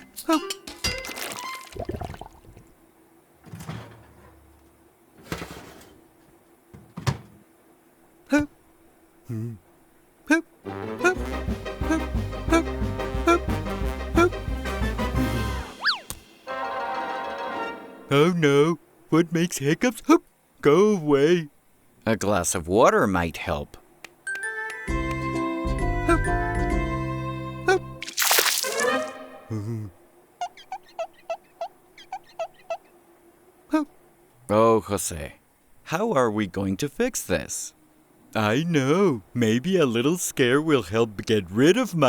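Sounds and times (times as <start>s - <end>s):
cartoon background music: 10.6s - 18.4s, 24.3s - 29.6s
cartoon character hiccuping: 11.9s - 13.5s.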